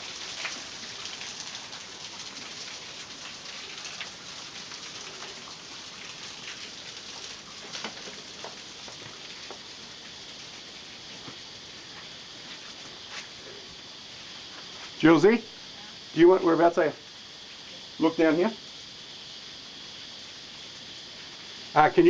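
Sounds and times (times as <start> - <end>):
small waterfall splashing on rock: 0.0 - 13.1.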